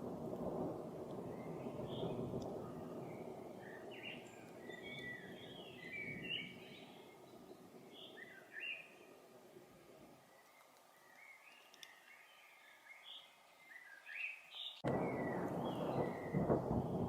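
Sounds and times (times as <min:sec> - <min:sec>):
distant thunder rumble: 0:00.0 - 0:08.6, 0:14.8 - 0:17.0
small bird chirping: 0:03.1 - 0:09.1.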